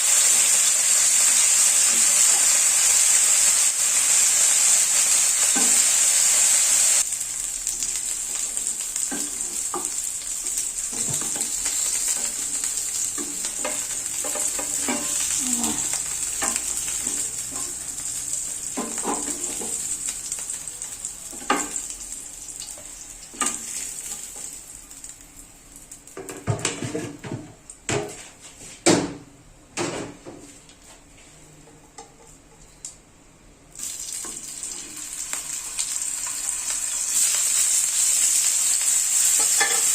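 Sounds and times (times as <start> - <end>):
food sizzling in a frying pan: 0.0 - 26.9, 33.7 - 39.9
utensil scraping a pan: 13.2 - 15.8, 18.8 - 19.8.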